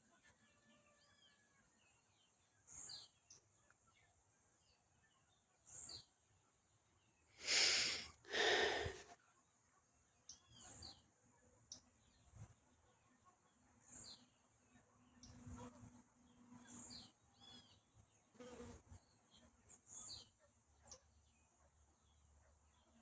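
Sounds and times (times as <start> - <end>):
loud breathy rushes of noise: 7.4 - 9.0.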